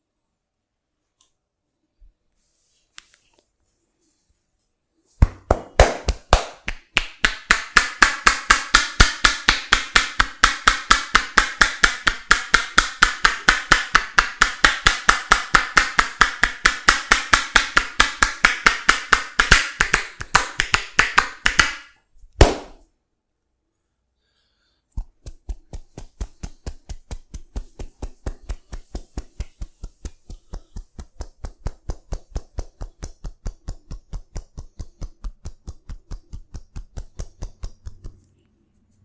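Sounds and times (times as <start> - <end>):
hands slapping in massage: 5.1 - 22.9, 24.9 - 38.3.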